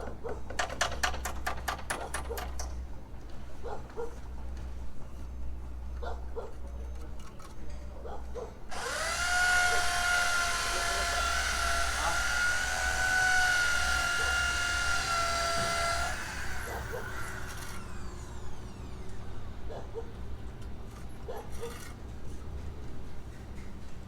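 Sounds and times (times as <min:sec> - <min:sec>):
power tool whining: 0:08.7 - 0:19.5.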